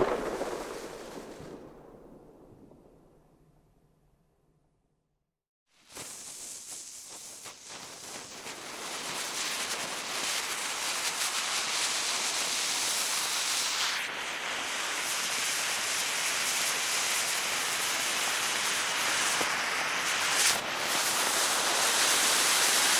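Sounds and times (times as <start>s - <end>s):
firework hissing and crackling: 0.0s - 1.7s, 5.8s - 22.9s.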